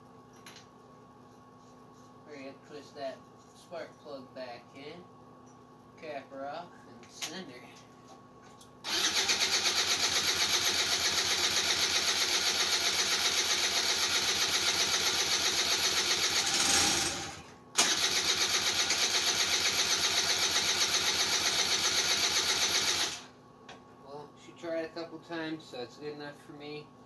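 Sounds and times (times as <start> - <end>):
starter cranking scooter engine: 8.9 - 23.3.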